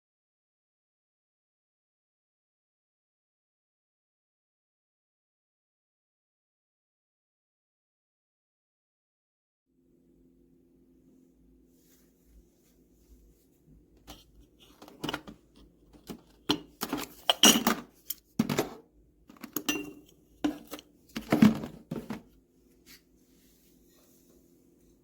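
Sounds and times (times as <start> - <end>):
faint steady hum: 9.8 - 25.0
kitchenware clinking and clattering: 14.0 - 22.2.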